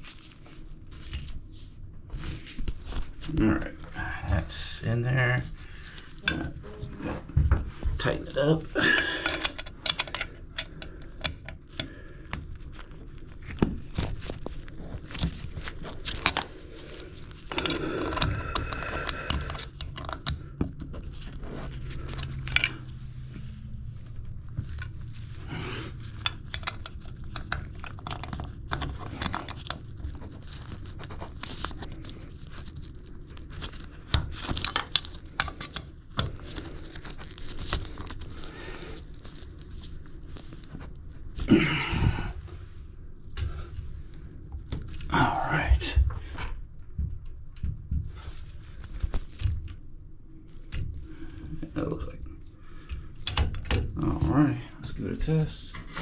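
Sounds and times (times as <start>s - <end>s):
rustling and tearing: 0.0s - 4.0s, 9.5s - 45.1s.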